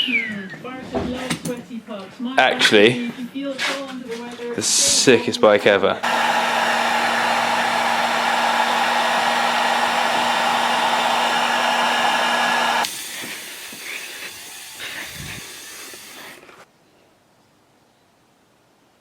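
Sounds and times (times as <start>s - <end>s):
blower rushing air with hum: 6.0s - 16.4s.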